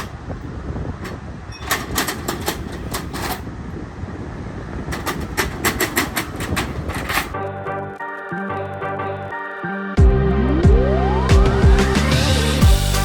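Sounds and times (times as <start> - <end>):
accordion shutter rattling: 0.0 - 0.4, 1.0 - 3.6, 4.9 - 7.5
wind noise: 0.0 - 7.4.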